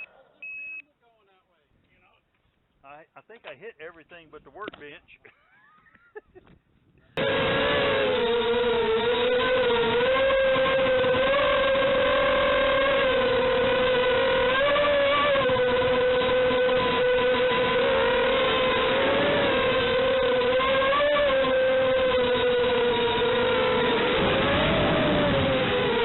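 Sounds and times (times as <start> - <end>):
drone propellers buzzing: 7.2 - 26.0.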